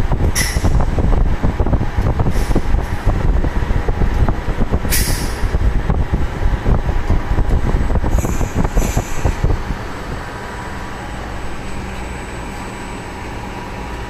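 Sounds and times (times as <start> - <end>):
machine mechanical clatter: 0.0 - 10.3.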